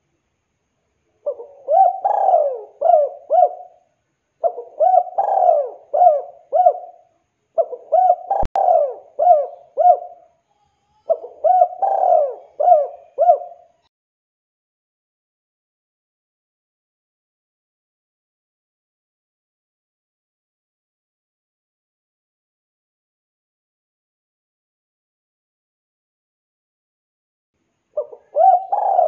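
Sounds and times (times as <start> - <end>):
dove cooing: 1.2 - 3.8, 4.4 - 10.3, 11.0 - 13.8, 28.0 - 29.0.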